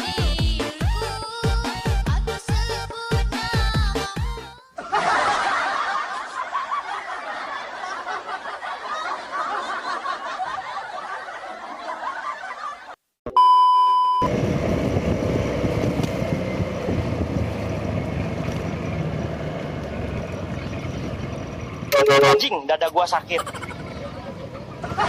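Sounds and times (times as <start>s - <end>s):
road traffic noise: 14.2s - 25.0s
steady electronic beep: 21.9s - 22.7s.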